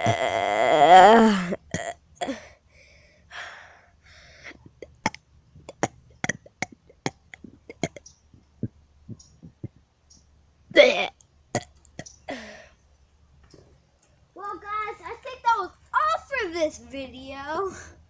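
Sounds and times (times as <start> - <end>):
loud burp: 0.0 - 2.4, 10.7 - 12.4
faint breathing: 2.3 - 4.8, 12.3 - 12.9, 17.6 - 18.0.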